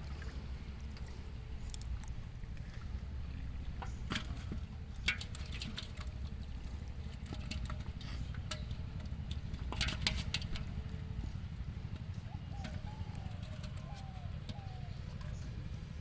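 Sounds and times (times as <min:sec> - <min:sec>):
water splashing and dripping: 0:00.0 - 0:10.7
steady low rumble: 0:00.0 - 0:16.0.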